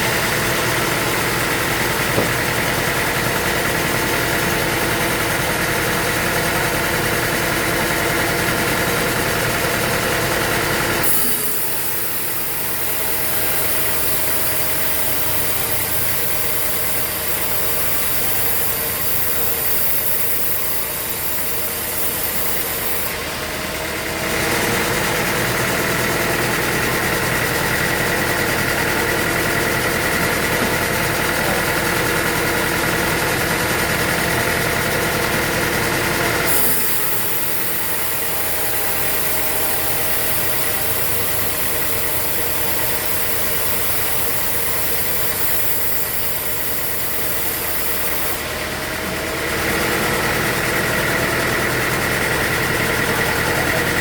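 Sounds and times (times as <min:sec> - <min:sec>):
sawmill engine running: 0:00.0 - 0:54.0
high hiss: 0:11.0 - 0:23.1, 0:36.5 - 0:48.4.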